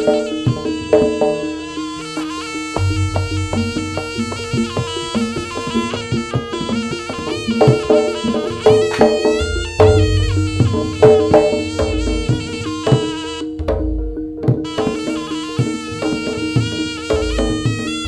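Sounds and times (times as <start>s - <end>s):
hand drum strokes: 0.0s - 18.0s
reedy wind instrument melody: 0.0s - 18.0s.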